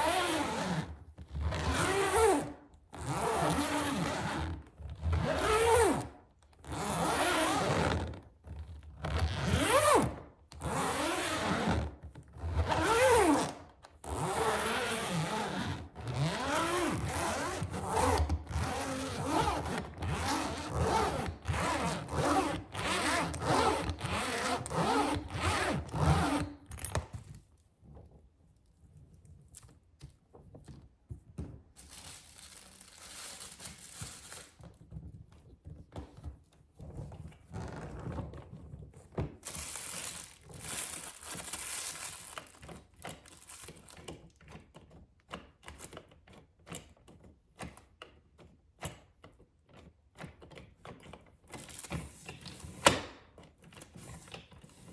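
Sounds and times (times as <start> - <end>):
suitcase zipper strokes: 0.0 - 4.5, 9.2 - 11.8, 12.4 - 26.6.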